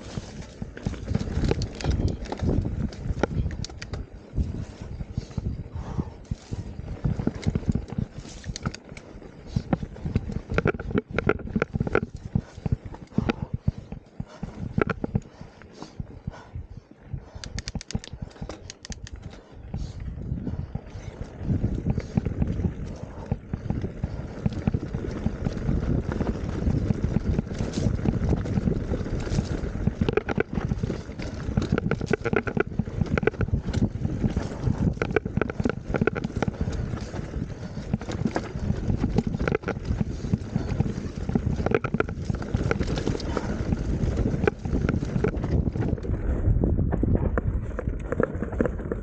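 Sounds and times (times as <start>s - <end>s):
bike knocks and rattles: 0.0s - 16.1s, 17.3s - 49.0s
tyres rumbling over ground: 19.0s - 49.0s.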